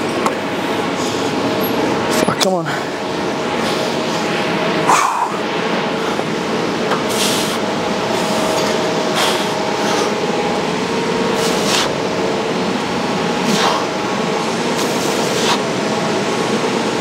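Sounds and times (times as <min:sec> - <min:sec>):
ventilation rushing: 0:00.0 - 0:17.0
sharp hissing breaths: 0:07.1 - 0:08.5, 0:09.1 - 0:10.2, 0:11.4 - 0:12.0, 0:13.4 - 0:13.9, 0:14.8 - 0:15.7.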